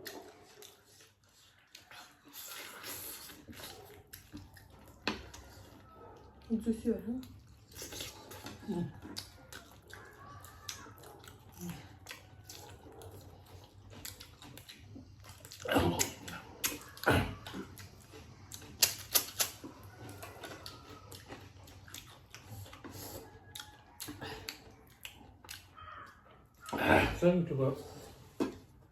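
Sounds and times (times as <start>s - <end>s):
chewing and mouth smacking: 0.0s - 28.9s.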